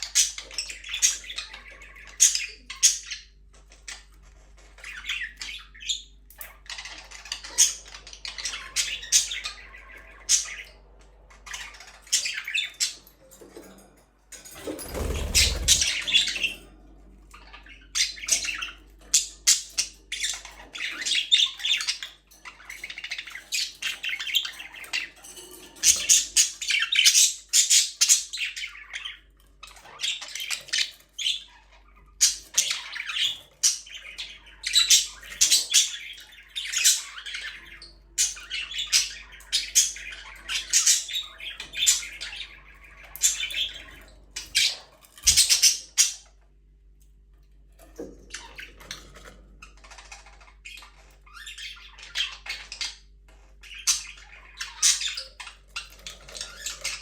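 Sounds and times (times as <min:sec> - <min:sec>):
budgerigars chirping: 0:14.9 - 0:16.5.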